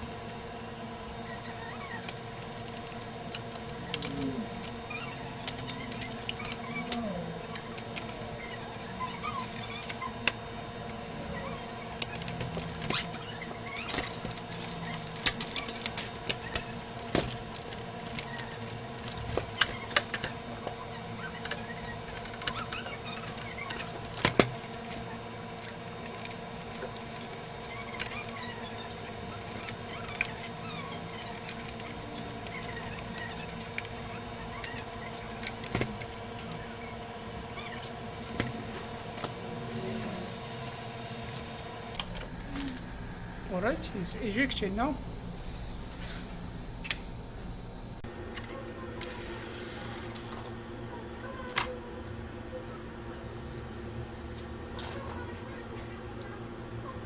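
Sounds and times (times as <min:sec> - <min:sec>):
steady hum: 0:00.0 - 0:57.0
plastic and metal parts clicking: 0:01.4 - 0:11.1, 0:11.8 - 0:39.8.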